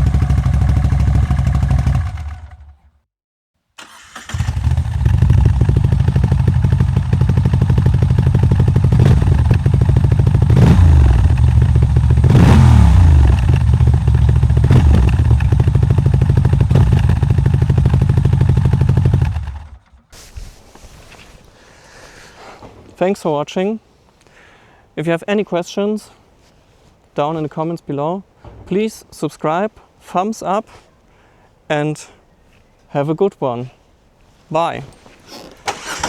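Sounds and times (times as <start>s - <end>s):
motorcycle engine idling and revving: 0.0s - 3.0s, 4.0s - 20.1s.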